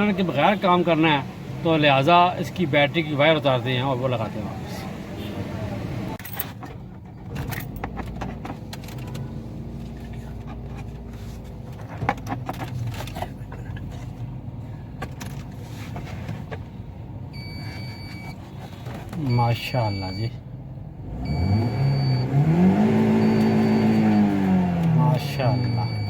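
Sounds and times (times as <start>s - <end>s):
steady high beep: 25.1s - 26.0s.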